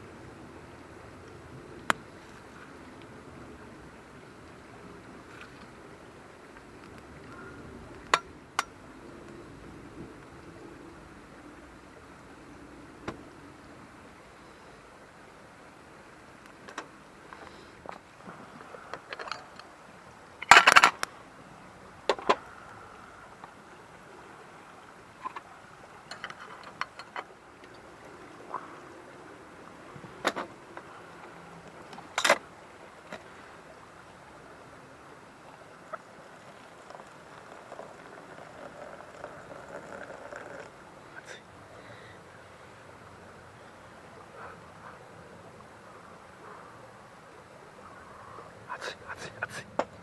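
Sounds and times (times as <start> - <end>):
faint steady hiss: 0.0 - 50.0
clinks and knocks of objects handled: 19.0 - 19.7.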